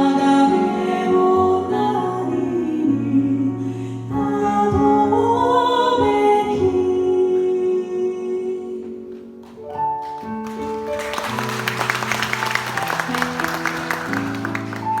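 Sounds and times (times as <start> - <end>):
person singing: 0.0 - 9.1
audience applause: 10.0 - 15.0.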